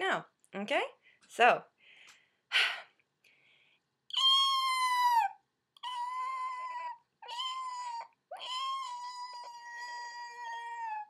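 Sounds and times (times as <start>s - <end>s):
woman imitating cat meows: 4.1s - 11.0s.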